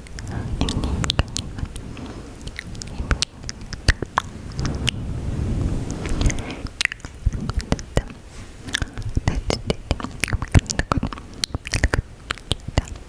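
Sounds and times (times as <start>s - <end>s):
wet lip and tongue clicks: 0.0s - 4.3s, 6.2s - 13.0s.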